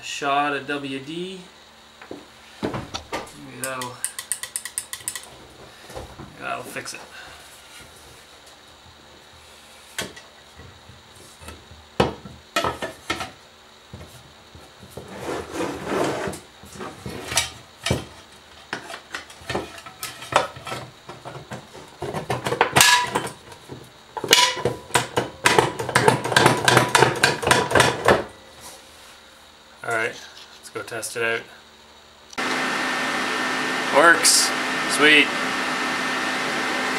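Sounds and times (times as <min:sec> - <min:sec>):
tools clicking and rattling: 0:03.6 - 0:05.3
rubbing or scraping: 0:15.1 - 0:16.4.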